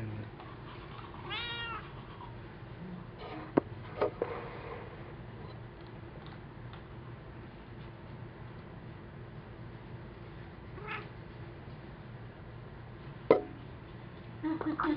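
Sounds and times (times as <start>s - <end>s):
steady low hum: 0.0s - 14.9s
cat meowing: 0.9s - 1.9s, 10.8s - 11.1s.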